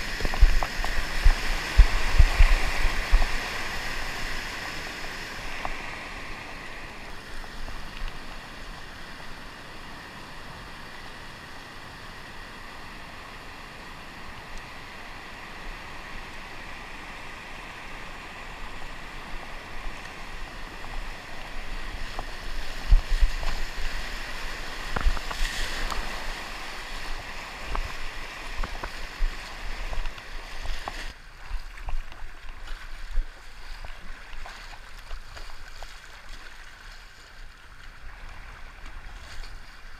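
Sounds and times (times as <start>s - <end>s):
knocks and splashes: 0.0s - 3.6s
rushing river water: 0.0s - 39.9s.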